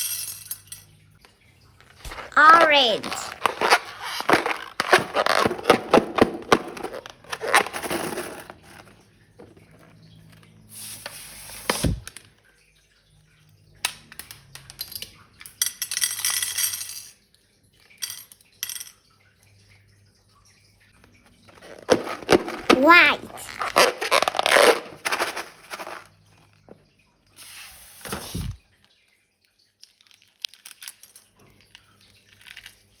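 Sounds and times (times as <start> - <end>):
small hard objects clinking: 1.9 - 9.8, 21.5 - 26.1, 29.8 - 33.0
short hissing bursts: 27.4 - 28.6.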